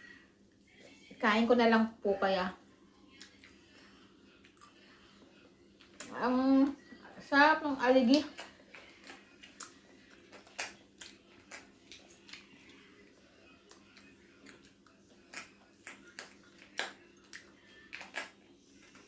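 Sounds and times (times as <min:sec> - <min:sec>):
chewing smacks: 0:03.1 - 0:03.8, 0:04.4 - 0:05.0, 0:08.1 - 0:19.0.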